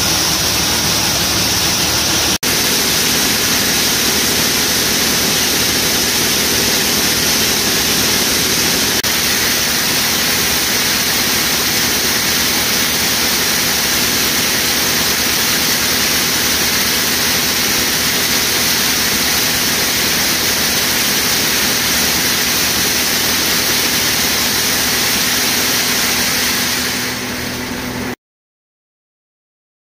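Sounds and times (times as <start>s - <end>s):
harvest machinery running: 0.0s - 28.2s.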